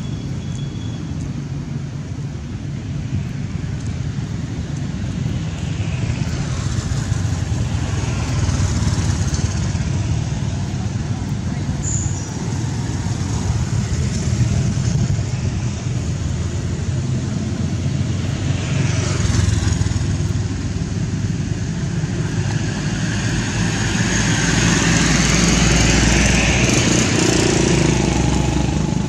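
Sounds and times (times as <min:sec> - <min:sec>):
motor engine running: 0:25.0 - 0:29.0.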